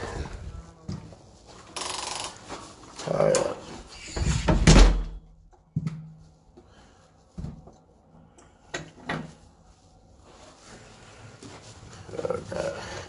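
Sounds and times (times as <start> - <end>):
knocks and thuds of handling: 7.3 - 7.8.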